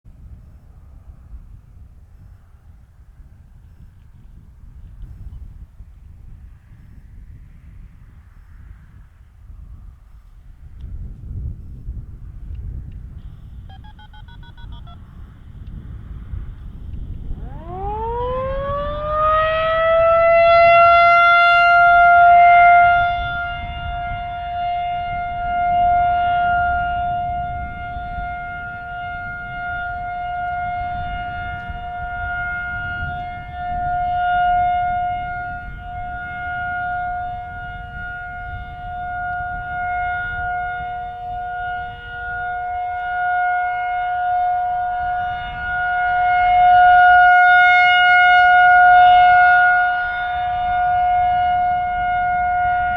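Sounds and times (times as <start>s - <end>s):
warning siren wailing: 13.3s - 52.9s.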